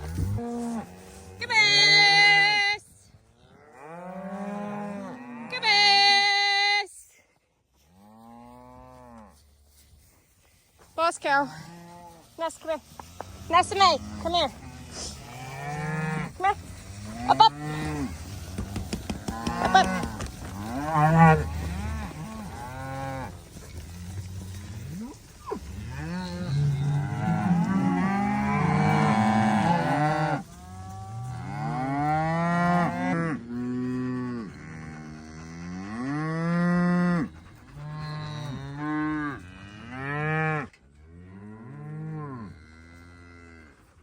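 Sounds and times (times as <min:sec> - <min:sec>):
cows mooing: 0:13.0 - 0:43.8.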